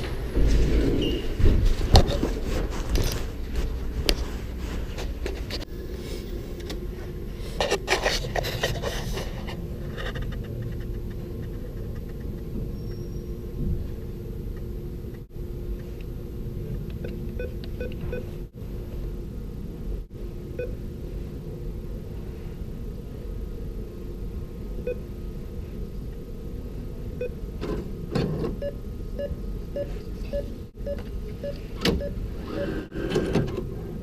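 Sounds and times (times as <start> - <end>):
rustling and scraping: 0.0 - 12.8
steady low hum: 0.0 - 34.0
short keypad beeps: 28.6 - 32.8.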